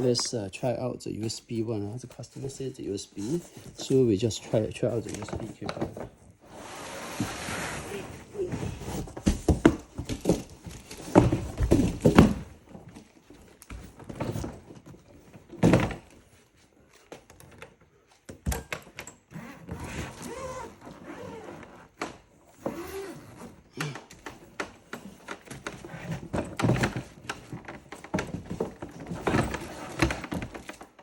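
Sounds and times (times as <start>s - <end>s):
rustling: 1.5s - 17.2s
suitcase thumps and knocks: 8.9s - 12.7s, 15.5s - 16.2s.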